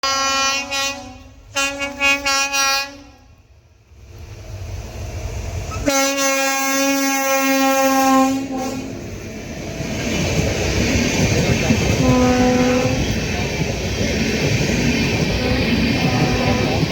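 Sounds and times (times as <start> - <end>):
locomotive horn blasts: 0.0 - 3.3, 5.8 - 9.0, 12.0 - 13.1, 15.4 - 16.9
train rumbling: 0.0 - 16.9.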